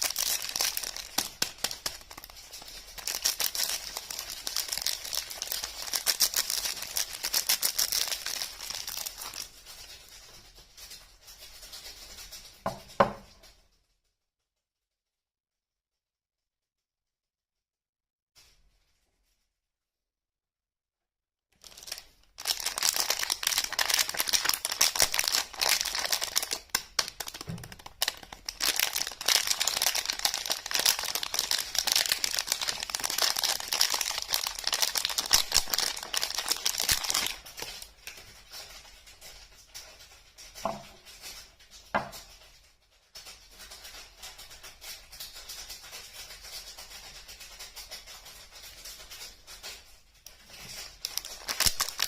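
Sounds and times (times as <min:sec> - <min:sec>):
wrapper tearing and crinkling: 0:00.0 - 0:10.2, 0:21.6 - 0:38.8, 0:43.7 - 0:52.0.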